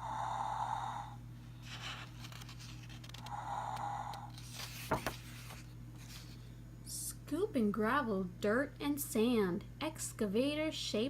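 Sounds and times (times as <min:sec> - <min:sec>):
snoring effect from small speaker: 0:00.0 - 0:01.2, 0:03.2 - 0:04.3
paper page turning: 0:01.6 - 0:03.3, 0:04.3 - 0:06.4.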